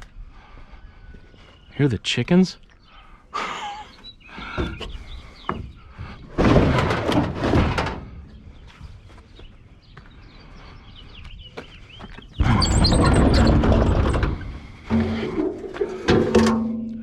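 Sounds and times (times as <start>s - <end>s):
scrap metal rattling clatter: 6.4s - 8.2s, 12.4s - 16.8s.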